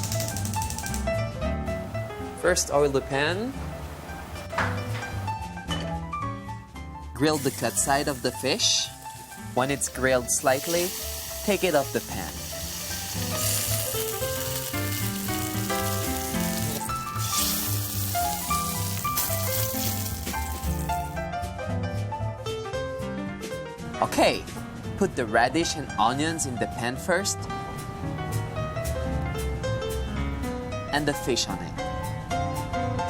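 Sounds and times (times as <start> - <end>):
background music: 0.0 - 33.0
fish sizzling in a frying pan: 7.3 - 21.2.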